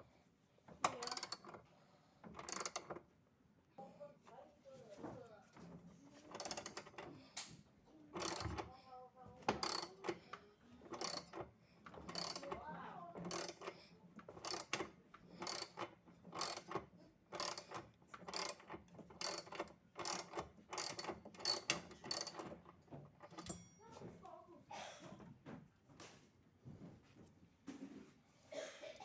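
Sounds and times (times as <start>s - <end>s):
ratchet tool clicking: 1.0s - 1.4s, 2.4s - 2.9s, 6.4s - 7.0s, 8.2s - 8.6s, 9.6s - 10.2s, 11.0s - 11.4s, 12.1s - 12.5s, 13.3s - 13.7s, 14.4s - 14.8s, 15.4s - 16.8s, 17.4s - 22.5s.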